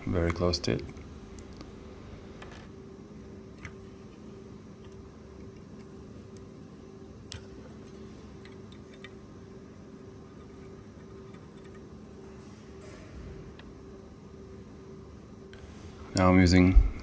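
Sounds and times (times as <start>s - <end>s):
low hum with pulsing tone: 0.0s - 17.0s
metal parts clicking: 7.3s - 9.2s, 10.2s - 12.4s.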